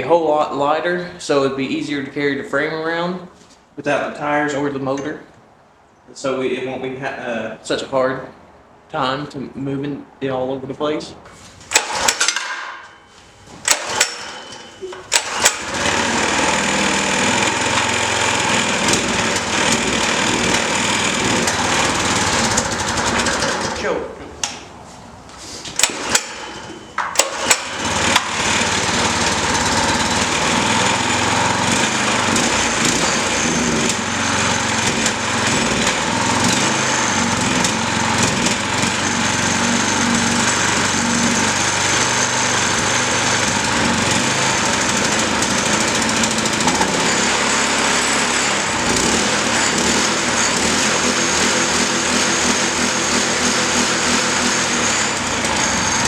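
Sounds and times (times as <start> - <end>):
small engine running: 13.7 - 23.8, 25.8 - 56.0.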